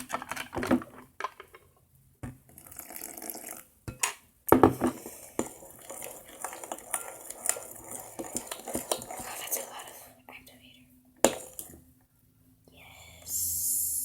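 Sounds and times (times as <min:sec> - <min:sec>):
liquid pouring into a bowl: 0:02.4 - 0:03.8, 0:05.0 - 0:10.0.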